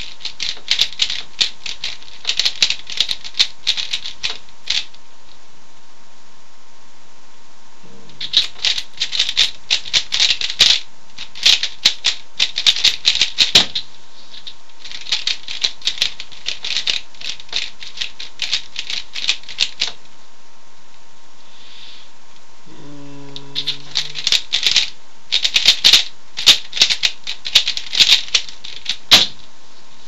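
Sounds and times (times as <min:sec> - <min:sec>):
puzzle cube fast plastic clicking: 0:23.6 - 0:29.3.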